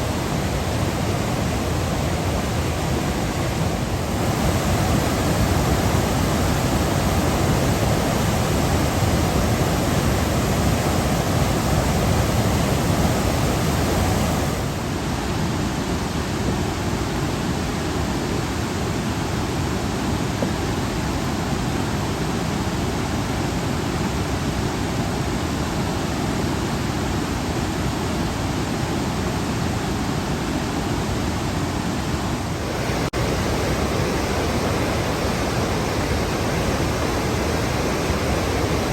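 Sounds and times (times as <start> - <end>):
waterfall roaring: 0.0 - 38.9.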